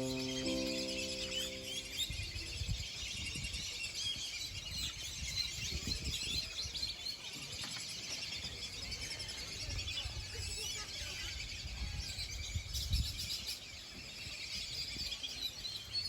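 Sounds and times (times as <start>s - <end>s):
background music: 0.0s - 2.0s
small birds chirping: 0.0s - 2.1s.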